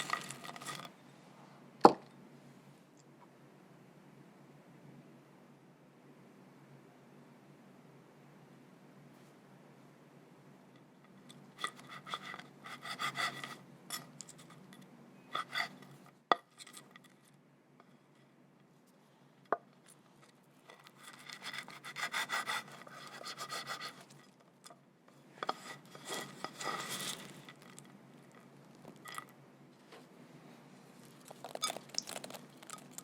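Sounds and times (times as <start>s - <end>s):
utensil scraping a mixing bowl: 0.0s - 0.9s, 11.6s - 13.6s, 15.2s - 16.0s, 20.7s - 24.4s, 25.4s - 29.3s.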